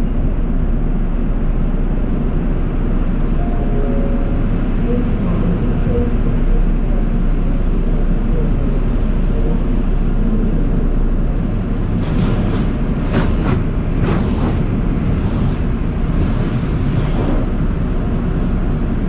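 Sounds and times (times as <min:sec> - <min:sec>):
car wash equipment rumbling: 0:00.0 - 0:19.0.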